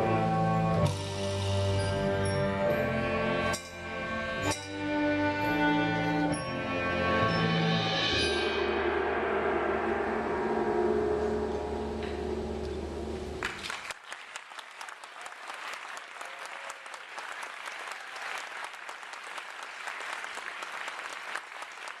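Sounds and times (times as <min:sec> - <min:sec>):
audience applause: 0:13.4 - 0:22.0.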